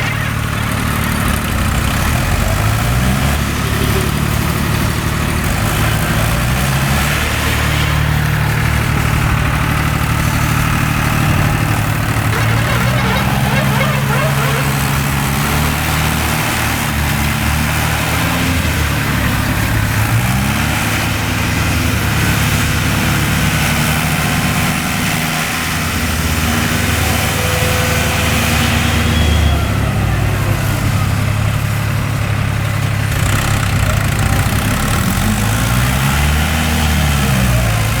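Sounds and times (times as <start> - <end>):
tractor diesel engine revving: 0.3 - 29.0.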